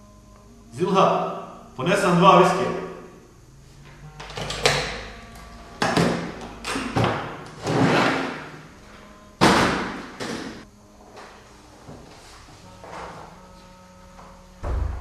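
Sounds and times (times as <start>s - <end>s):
thuds and knocks: 14.6s - 15.0s.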